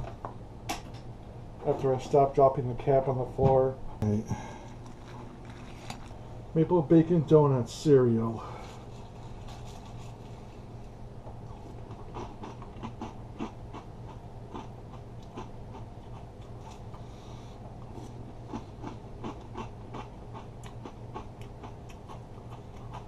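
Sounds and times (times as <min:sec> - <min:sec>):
steady low hum: 0:00.0 - 0:23.0
cereal being chewed: 0:04.7 - 0:06.2, 0:08.6 - 0:17.1, 0:17.7 - 0:23.0.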